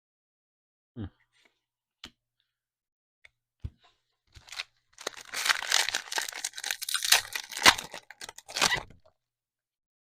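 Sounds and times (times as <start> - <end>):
wrapper snapping: 4.4 - 9.0
plastic wrapper crinkling and tearing: 4.4 - 9.1.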